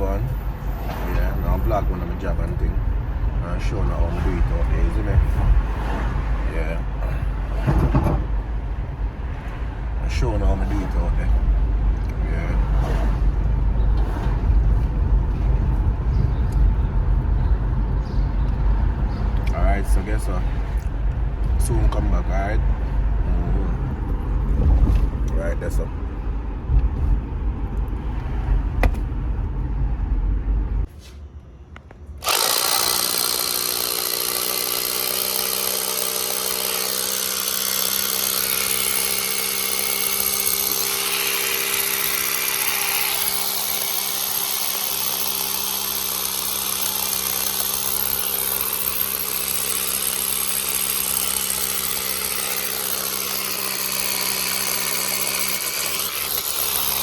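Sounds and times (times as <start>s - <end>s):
low car cabin rumble: 0.0s - 30.9s
power drill drilling into wall: 32.2s - 57.0s.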